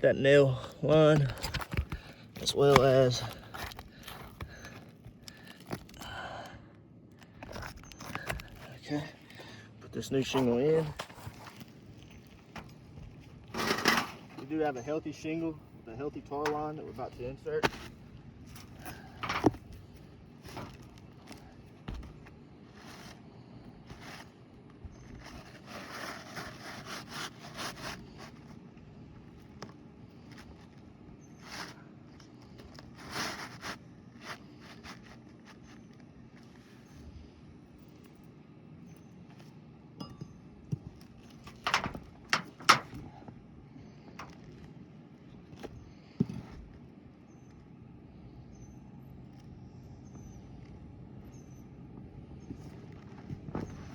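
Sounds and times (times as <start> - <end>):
shingle scraping against shingles: 0.8 - 6.0, 7.3 - 28.6, 30.2 - 35.8, 41.2 - 43.2
roof shingle knocks and clicks: 40.8 - 43.2.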